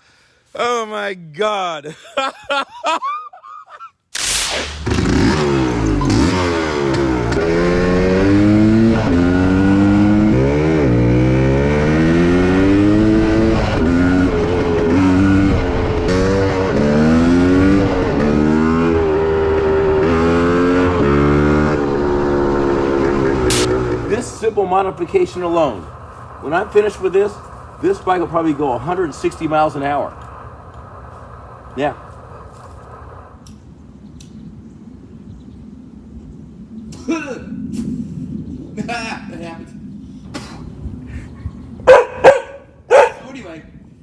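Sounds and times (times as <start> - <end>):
motorcycle engine revving: 4.2 - 24.3.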